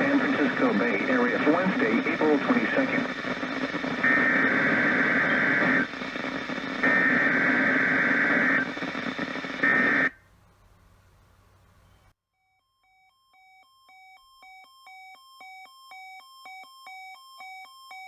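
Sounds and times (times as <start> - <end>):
radio hiss: 0.0 - 10.2.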